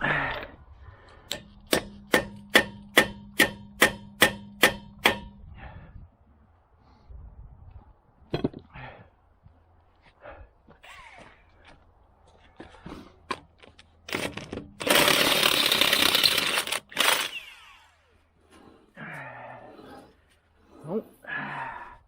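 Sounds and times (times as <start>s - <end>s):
hammer striking metal: 1.3s - 5.4s.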